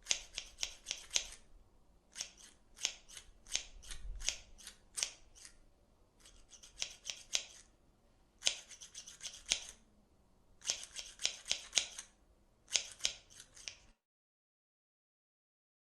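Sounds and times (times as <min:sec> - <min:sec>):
scissors snipping: 0:00.0 - 0:01.4, 0:02.1 - 0:05.6, 0:06.2 - 0:07.7, 0:08.4 - 0:09.8, 0:10.6 - 0:14.0.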